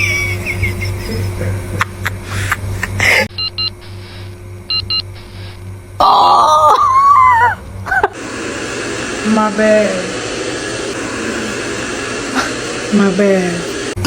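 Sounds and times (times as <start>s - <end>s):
short electronic beeps: 3.3s - 5.6s
wavering voice-like cry: 6.0s - 7.6s
robot vacuum motor hum: 8.1s - 14.0s.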